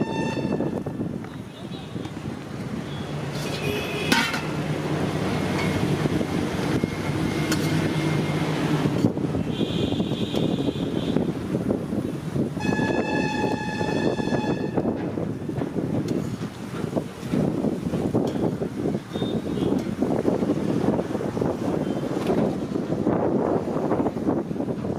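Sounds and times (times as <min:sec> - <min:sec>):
vehicle horns honking: 0:00.0 - 0:00.8, 0:02.9 - 0:04.5, 0:09.4 - 0:11.3, 0:12.6 - 0:14.9, 0:19.1 - 0:19.8
road traffic: 0:00.0 - 0:24.9.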